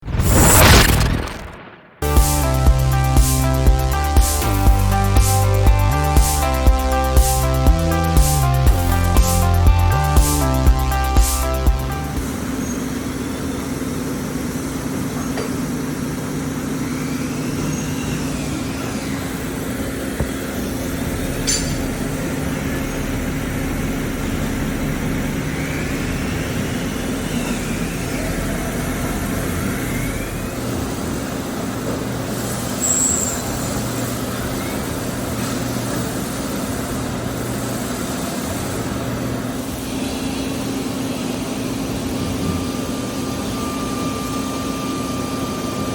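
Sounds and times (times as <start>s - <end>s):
faint machine whine: 12.0s - 45.9s.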